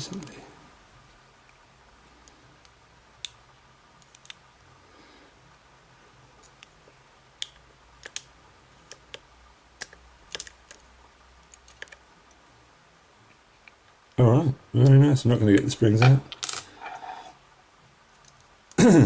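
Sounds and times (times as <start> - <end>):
metal lock pins clicking: 9.8 - 10.8.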